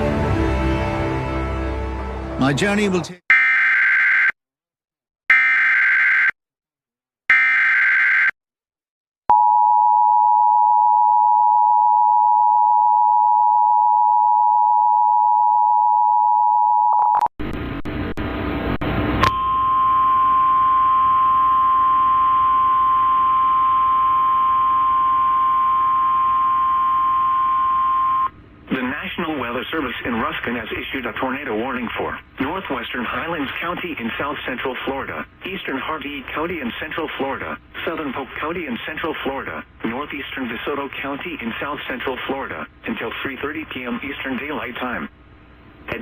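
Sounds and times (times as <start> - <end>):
steady warning tone: 19.2 - 28.4.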